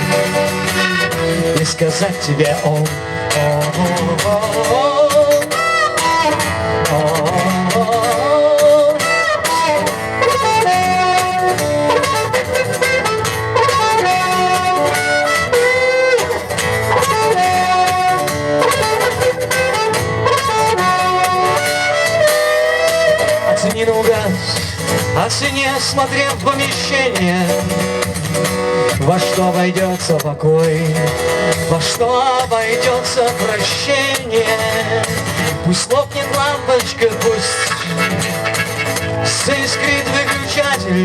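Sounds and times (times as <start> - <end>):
melodic lead line: 0.0 - 29.8
guitar strumming: 0.0 - 41.0.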